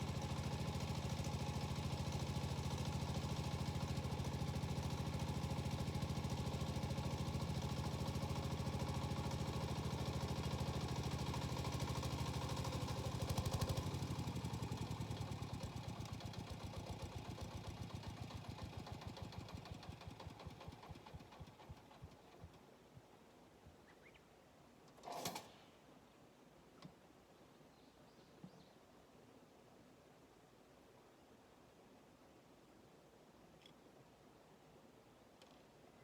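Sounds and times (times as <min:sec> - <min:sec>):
diesel tiller engine idling: 0:00.0 - 0:21.9.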